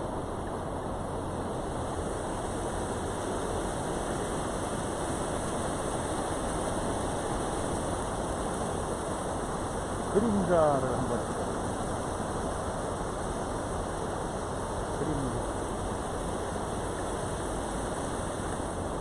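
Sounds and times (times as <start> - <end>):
steady rushing noise: 0.0 - 19.0.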